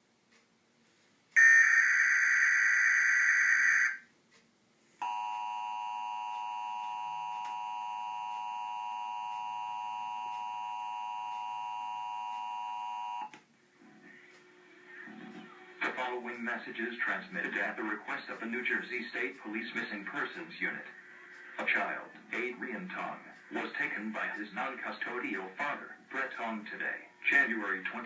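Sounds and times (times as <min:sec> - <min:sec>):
two-tone attention signal: 0:05.0 - 0:13.3.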